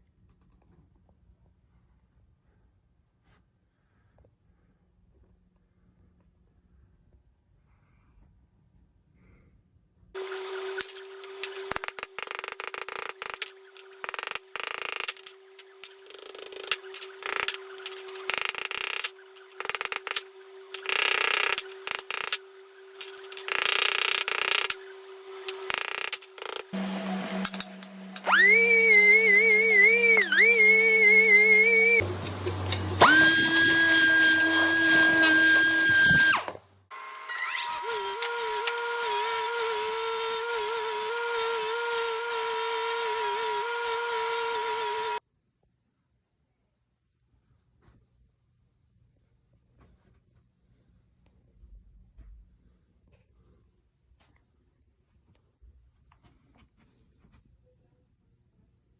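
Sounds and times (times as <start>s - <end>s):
power tool running with hiss: 10.2s - 45.2s
hand scraping metal: 10.6s - 36.6s.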